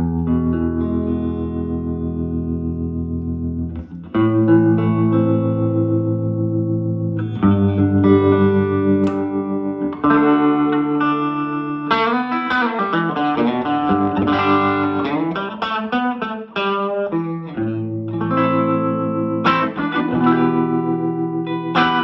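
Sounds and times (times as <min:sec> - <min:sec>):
electric guitar chords and notes: 0:00.0 - 0:22.0.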